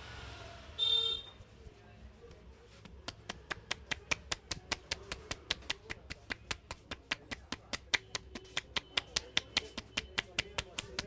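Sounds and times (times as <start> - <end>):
hands tapping on head: 2.8 - 11.0.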